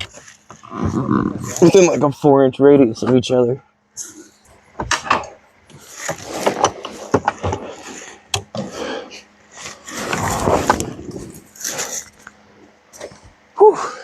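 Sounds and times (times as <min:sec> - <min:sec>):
loud scrape: 0:09.6 - 0:12.2.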